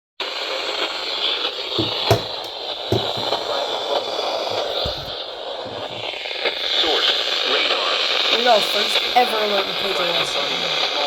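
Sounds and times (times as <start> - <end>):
low thumps: 1.8 - 3.5.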